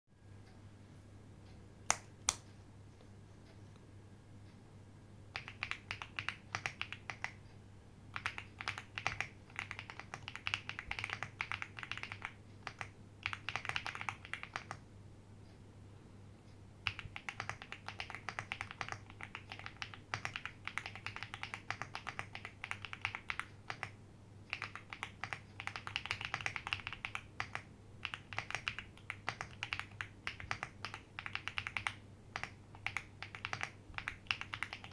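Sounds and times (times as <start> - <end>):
mechanical keyboard typing: 5.3 - 7.4, 8.1 - 14.8, 16.8 - 34.9.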